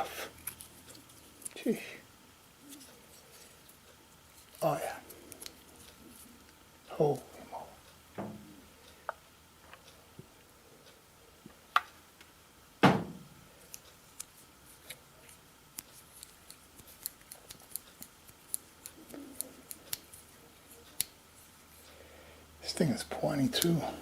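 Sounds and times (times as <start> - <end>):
loud knock: 12.8 - 13.2.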